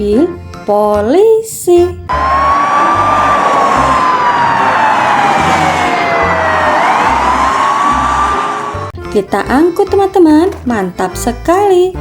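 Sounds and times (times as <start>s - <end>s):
police siren wailing: 2.1s - 9.0s.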